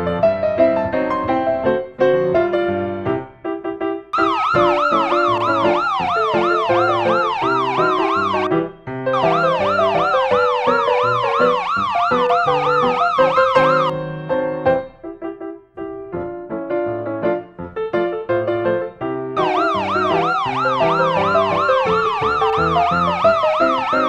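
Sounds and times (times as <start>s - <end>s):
piano music: 0.0s - 24.0s
police siren warbling: 4.2s - 8.5s, 9.1s - 13.9s, 19.4s - 24.0s.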